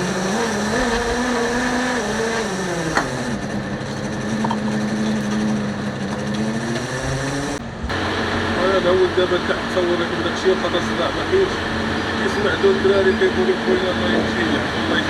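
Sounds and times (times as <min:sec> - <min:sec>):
boat engine humming: 0:00.0 - 0:15.0.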